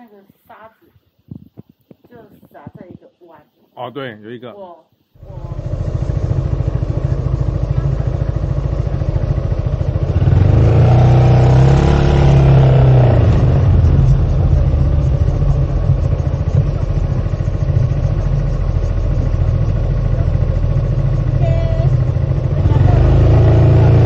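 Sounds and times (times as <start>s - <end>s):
engine running steadily: 5.2s - 24.0s
vehicle passing close by: 5.2s - 24.0s.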